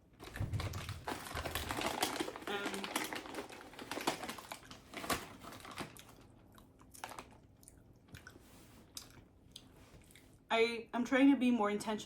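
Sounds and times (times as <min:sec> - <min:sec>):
chewing with wet clicks and crunches: 0:05.9 - 0:10.4.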